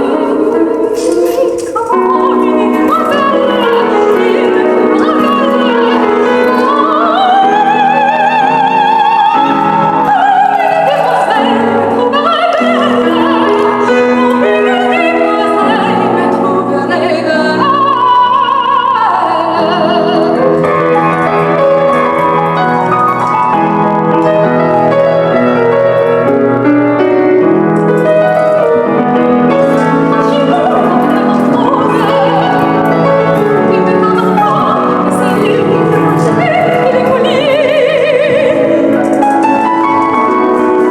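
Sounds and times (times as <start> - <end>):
soprano singing an aria: 0.0 - 24.6, 28.8 - 40.9
piano accompaniment: 0.0 - 40.9.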